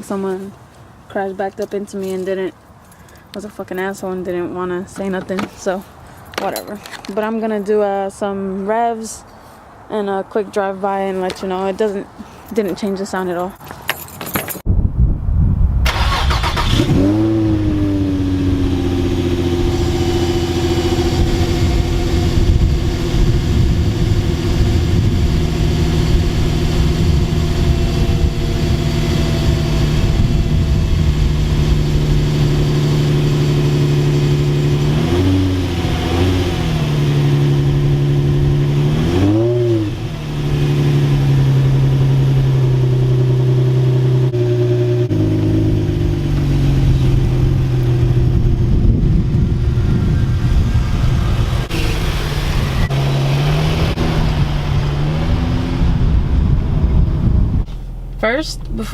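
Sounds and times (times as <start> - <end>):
car engine idling: 15.9 - 38.9, 39.9 - 58.9
car engine revving: 15.9 - 58.9.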